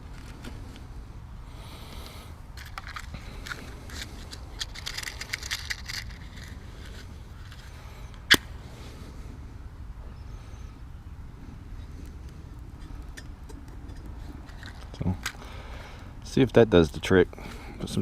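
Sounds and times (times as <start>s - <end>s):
dry grass and twigs crackling: 0.0s - 8.6s, 11.8s - 16.0s
steady low rumble: 0.0s - 18.0s.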